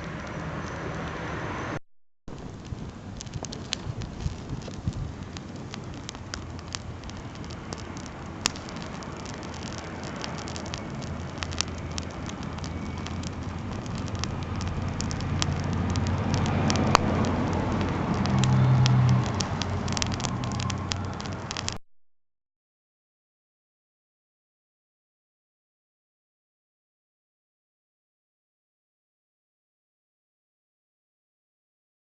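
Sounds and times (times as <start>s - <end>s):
campfire crackling and popping: 0.0s - 1.3s, 2.3s - 21.8s
low engine hum: 0.0s - 21.8s.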